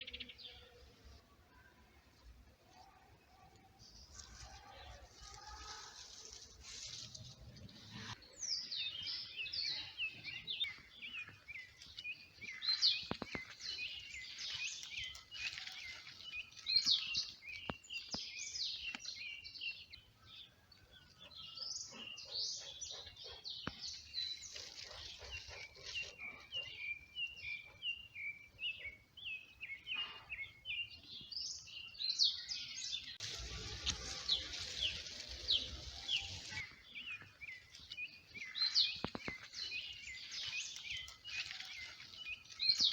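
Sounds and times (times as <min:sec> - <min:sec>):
small birds chirping: 0:00.0 - 0:42.9
rustling noise: 0:03.9 - 0:08.2, 0:10.8 - 0:17.6, 0:33.0 - 0:42.9.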